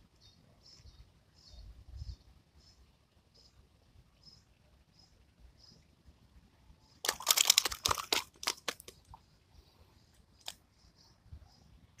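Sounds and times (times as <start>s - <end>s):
sharp clicks: 7.0s - 9.0s
crinkling crunching handling noise: 7.0s - 9.2s.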